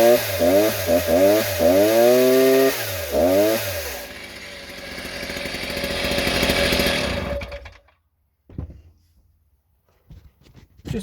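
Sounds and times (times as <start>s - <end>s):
chainsaw engine revving: 0.0s - 8.0s.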